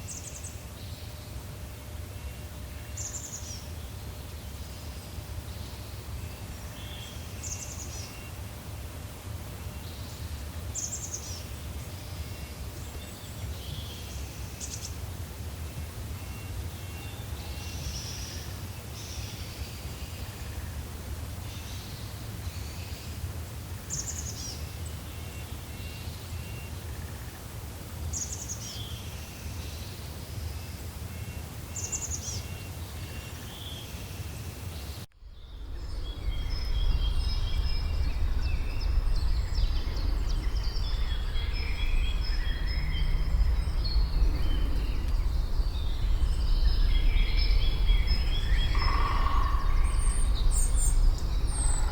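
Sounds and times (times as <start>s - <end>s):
birds calling and singing: 28.2s - 51.9s
low rumble: 35.1s - 51.9s.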